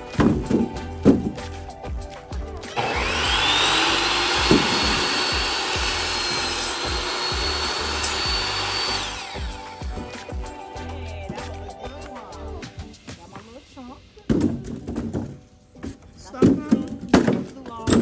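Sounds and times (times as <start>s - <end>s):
background music with steady beat: 0.0s - 17.3s
electric power saw cutting wood: 2.7s - 10.1s.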